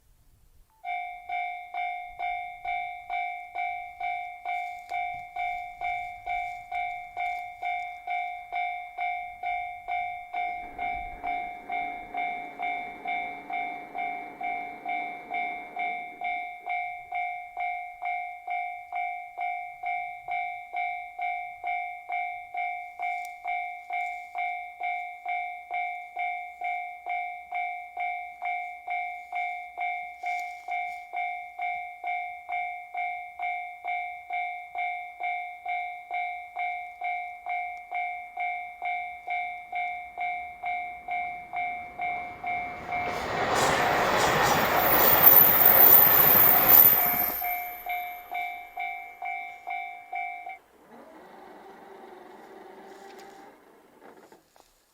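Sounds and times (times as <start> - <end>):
level-crossing warning bell: 0.7 - 53.8
diesel train passing: 2.1 - 18.2, 39.2 - 54.4.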